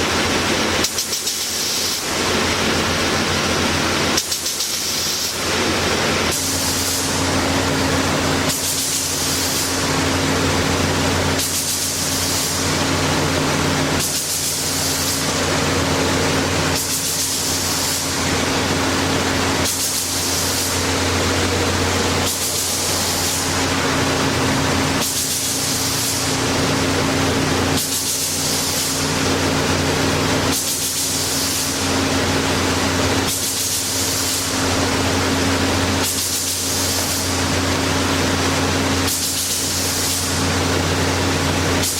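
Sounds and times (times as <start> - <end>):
belt sander running: 9.1 - 30.5.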